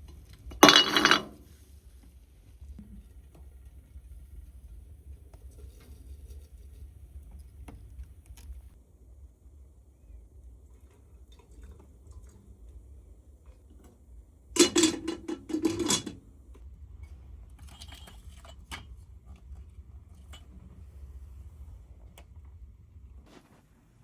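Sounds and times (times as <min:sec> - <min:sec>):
hard objects clattering and knocking: 0:00.5 - 0:01.5, 0:14.6 - 0:16.2.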